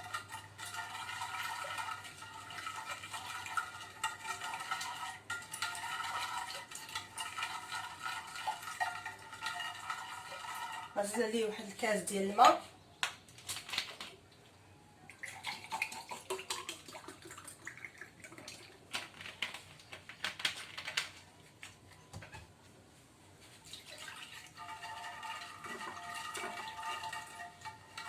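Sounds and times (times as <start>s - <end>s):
water pouring and splashing: 0.0s - 11.5s, 15.1s - 19.7s, 23.5s - 28.0s.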